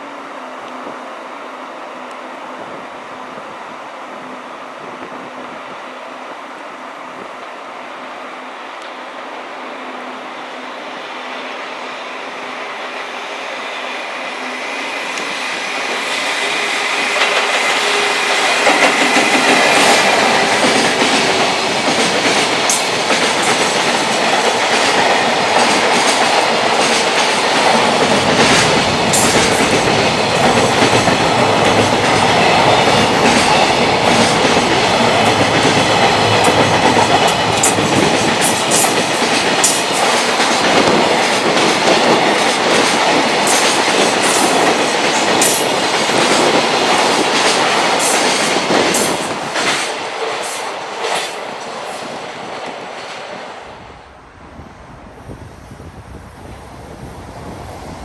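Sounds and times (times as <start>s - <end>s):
freight train passing: 0.0s - 58.0s
wheels clacking over rail joints: 15.9s - 53.4s.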